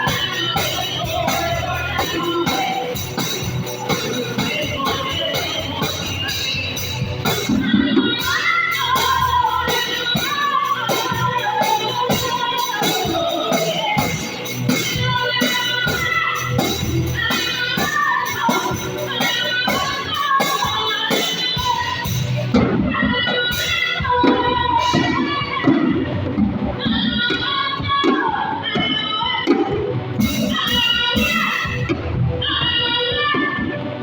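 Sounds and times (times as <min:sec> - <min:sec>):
tambourine rhythm: 0:00.0 - 0:22.6
person singing: 0:00.0 - 0:26.0.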